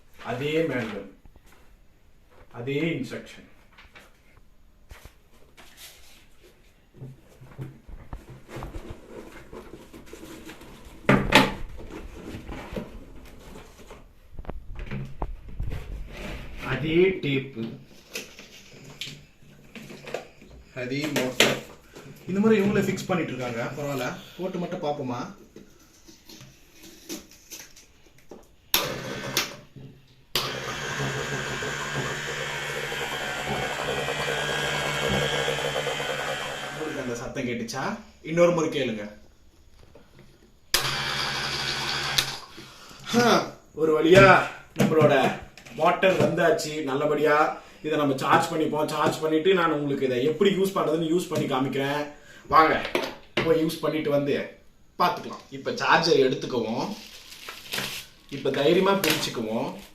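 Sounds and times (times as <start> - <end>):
pump motor humming: 30.4 - 37.1, 40.8 - 42.5
packaging being handled: 56.9 - 59.9.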